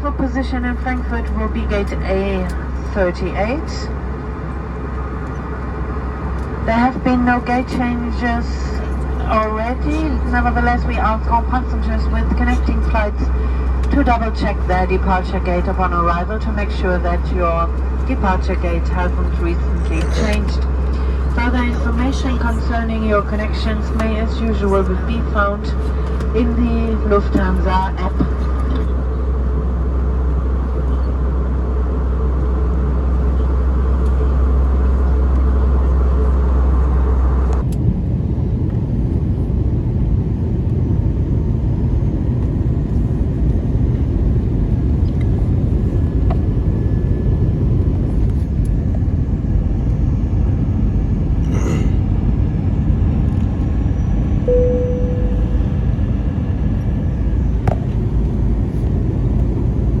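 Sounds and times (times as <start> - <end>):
aircraft engine and airflow rumble: 0.0 - 60.0
deep low hum: 0.0 - 60.0
brief cabin tone: 19.5 - 24.3, 53.9 - 56.4
steady tone: 54.4 - 58.7.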